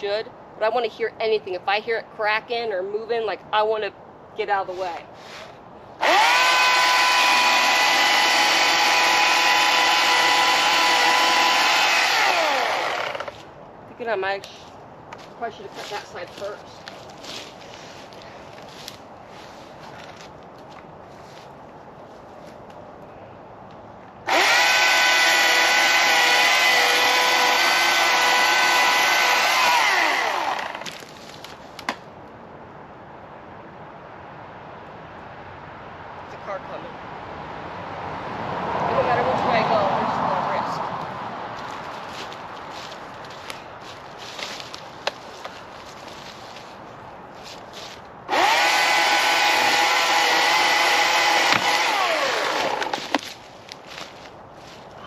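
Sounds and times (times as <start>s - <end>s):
chainsaw at full throttle: 6.0s - 13.4s, 24.3s - 30.9s, 48.3s - 53.2s.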